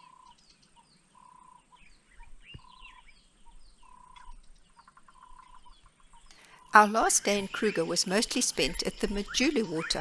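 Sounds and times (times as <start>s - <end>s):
birds chirping: 0.0s - 10.0s
bird whistling steady note: 5.1s - 10.0s.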